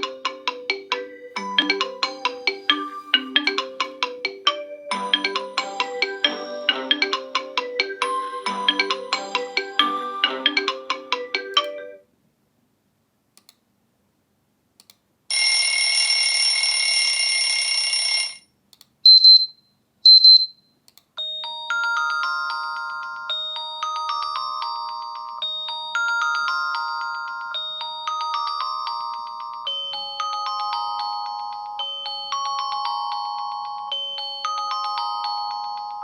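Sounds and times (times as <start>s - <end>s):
chime-like ringtone melody: 0.0s - 12.0s, 21.2s - 36.0s
bright phone ring: 15.3s - 18.5s
short high beeps: 19.1s - 20.6s.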